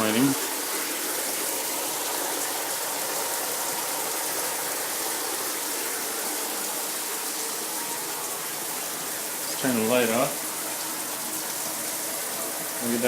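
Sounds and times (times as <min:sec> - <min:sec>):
shower water spraying: 0:00.0 - 0:13.0.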